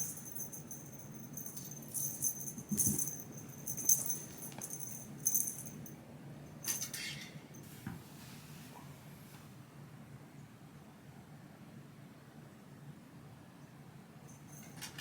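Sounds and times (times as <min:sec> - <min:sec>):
small bell jingling: 0:00.0 - 0:06.0, 0:14.3 - 0:14.8.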